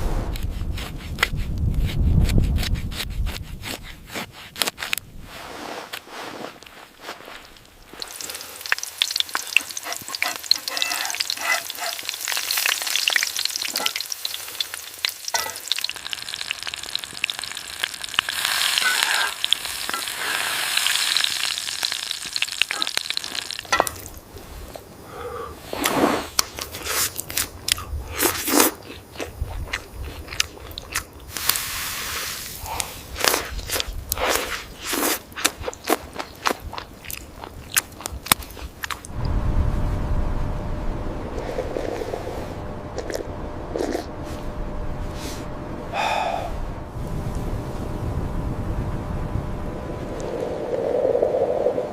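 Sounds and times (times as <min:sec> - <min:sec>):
food sizzling in a pan: 0:08.0 - 0:24.2.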